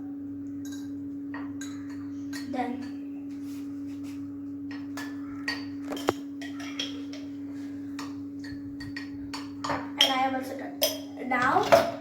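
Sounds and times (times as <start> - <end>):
electrical hum: 0.0 - 12.0
spoon tapping a mug: 8.0 - 10.2.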